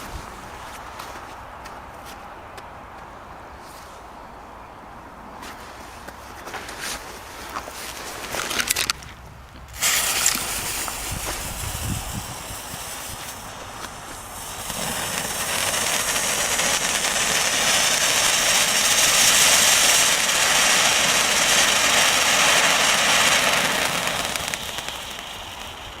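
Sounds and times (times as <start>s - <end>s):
firework crackles: 7.6s - 26.0s
firework fountain hissing: 9.6s - 26.0s.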